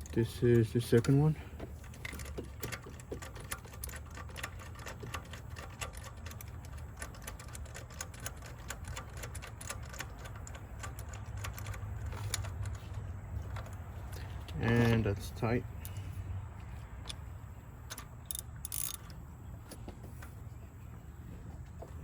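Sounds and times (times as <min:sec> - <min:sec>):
ratchet wrench clicking: 0:01.8 - 0:13.8, 0:17.9 - 0:19.2.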